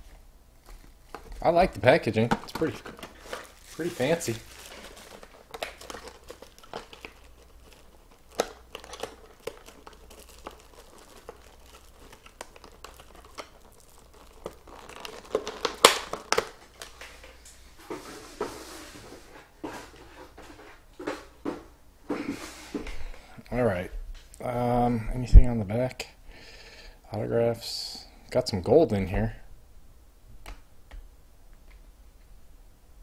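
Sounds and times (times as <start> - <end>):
packaging crinkling: 0.0 - 18.8.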